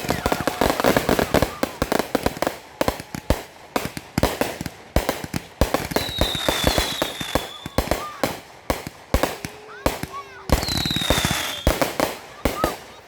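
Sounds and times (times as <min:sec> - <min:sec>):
high falling firework whistle: 0:00.0 - 0:03.5, 0:06.0 - 0:08.2
fireworks bangs and pops: 0:00.0 - 0:13.0.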